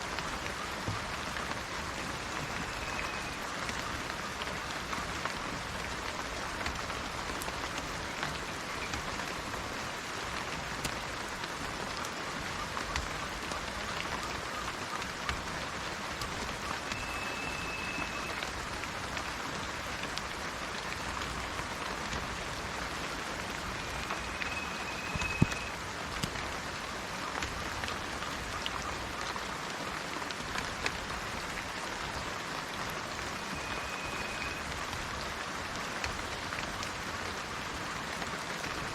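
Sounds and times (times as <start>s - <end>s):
rain falling: 0.0s - 38.9s
bird whistled note: 16.8s - 18.4s, 23.8s - 25.7s, 33.4s - 34.6s.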